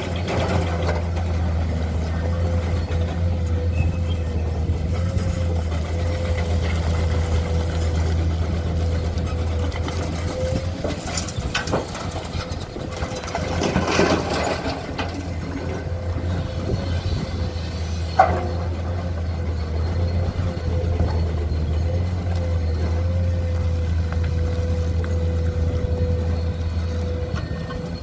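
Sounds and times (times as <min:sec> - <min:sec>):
heavy diesel machinery running: 0:00.0 - 0:28.0
metal clanks and rattles: 0:04.9 - 0:17.2.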